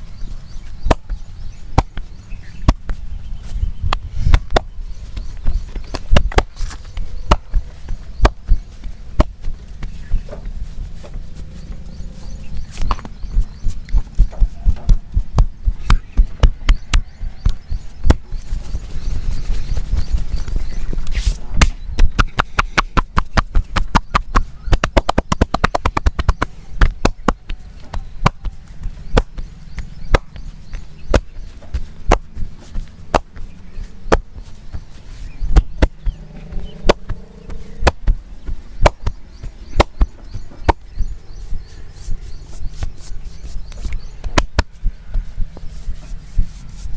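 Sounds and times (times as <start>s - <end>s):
hands slapping body in massage: 0.8s - 11.2s, 19.4s - 40.9s, 42.0s - 46.9s.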